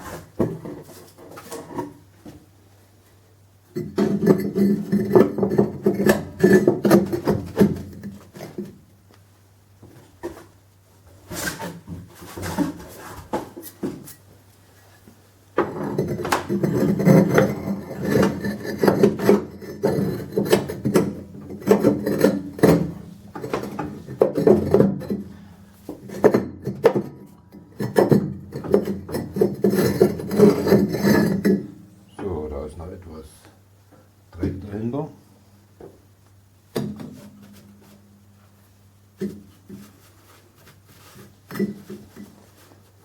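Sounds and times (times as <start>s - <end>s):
bricks scraping against firebox: 3.8s - 8.8s, 15.6s - 31.8s.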